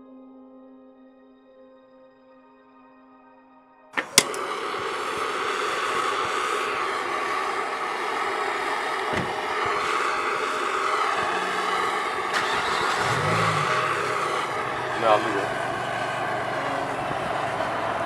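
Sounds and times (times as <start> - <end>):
sharp crack: 4.0 - 16.6
gas torch roaring: 4.0 - 18.0.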